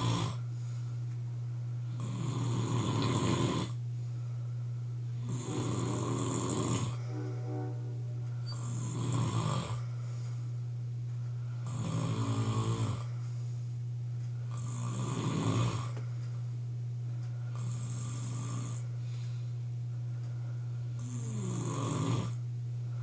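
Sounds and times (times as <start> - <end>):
man snoring loudly: 0.0 - 0.4, 2.0 - 3.8, 5.2 - 7.0, 8.5 - 9.8, 11.6 - 13.1, 14.6 - 16.0, 17.6 - 18.8, 21.0 - 22.4
steady low hum: 0.0 - 23.0.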